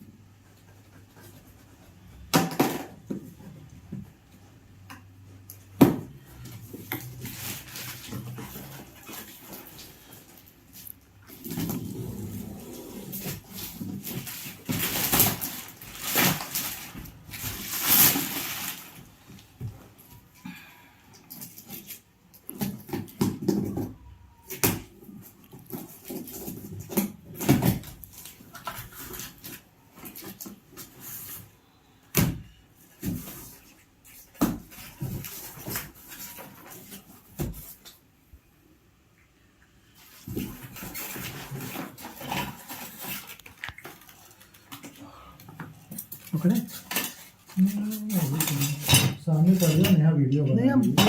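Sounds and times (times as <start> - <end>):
packaging rustling: 6.7 - 20.3, 40.0 - 45.0.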